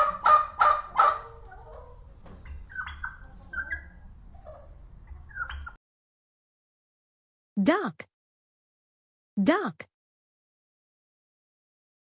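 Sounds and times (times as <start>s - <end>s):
guinea fowl calling: 0.0s - 5.8s.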